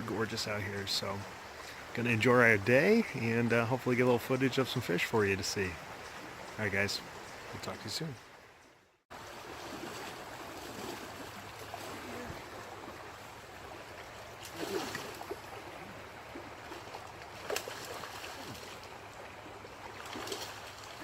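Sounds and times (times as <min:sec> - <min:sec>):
river water rushing: 0:00.0 - 0:08.5, 0:09.1 - 0:21.0
sharp clicks or splashes: 0:16.9 - 0:19.0.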